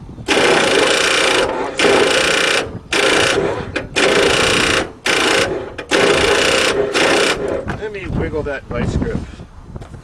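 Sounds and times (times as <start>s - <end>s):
starter solenoid rapid clicking: 0.3s - 7.7s.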